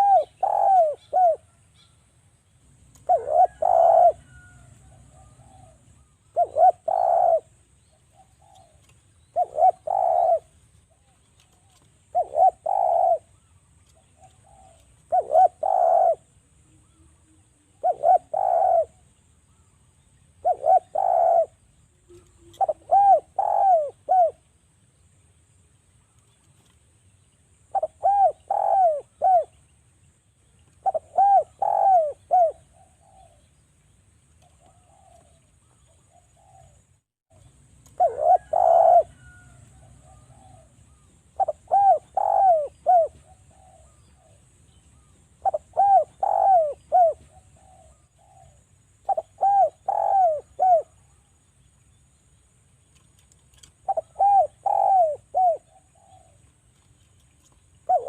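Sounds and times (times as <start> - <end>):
dove cooing: 0.0 - 1.9, 2.9 - 19.1, 20.4 - 24.4, 27.7 - 29.6, 30.7 - 33.5, 34.4 - 51.2, 53.2 - 58.0.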